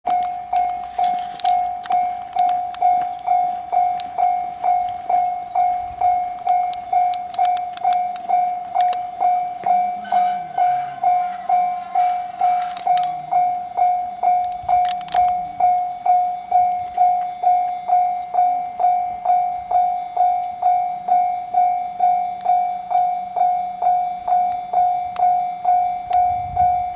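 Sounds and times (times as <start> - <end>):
level crossing alarm ding: 0.1 - 14.9.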